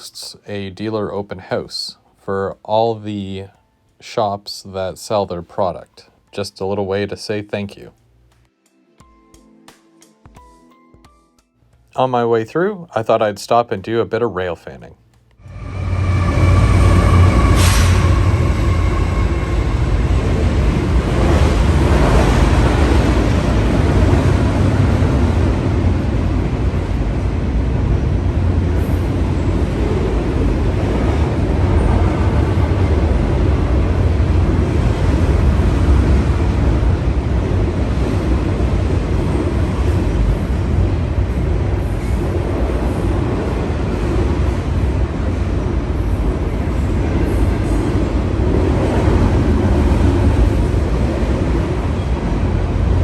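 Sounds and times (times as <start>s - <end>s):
train wheels rumbling on rails: 15.4s - 53.0s.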